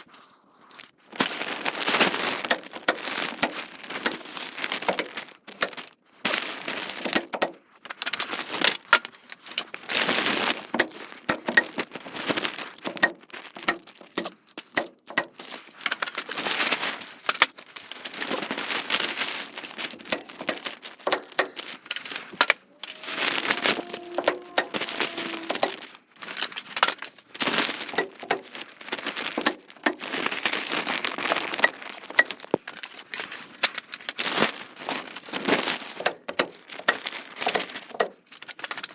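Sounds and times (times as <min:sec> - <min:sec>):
plastic sheeting crinkling: 0:01.0 - 0:07.3, 0:08.0 - 0:14.6, 0:15.4 - 0:38.9
manual stapler clicks: 0:02.4 - 0:04.2, 0:04.9 - 0:05.8, 0:07.1 - 0:07.6, 0:10.8 - 0:11.8, 0:12.8 - 0:15.4, 0:20.0 - 0:25.9, 0:27.9 - 0:28.6, 0:29.3 - 0:30.2, 0:31.6 - 0:32.6, 0:35.8 - 0:38.2.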